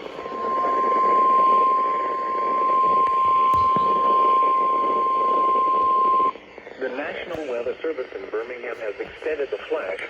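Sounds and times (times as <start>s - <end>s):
steady warning beep: 0.0s - 6.4s
radio static: 0.0s - 10.0s.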